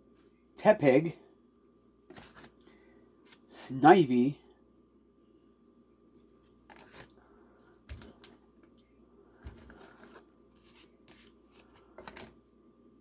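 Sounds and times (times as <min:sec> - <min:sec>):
cards rustling and clicking: 0:02.1 - 0:02.7, 0:06.6 - 0:07.2, 0:07.9 - 0:08.8, 0:09.4 - 0:12.4.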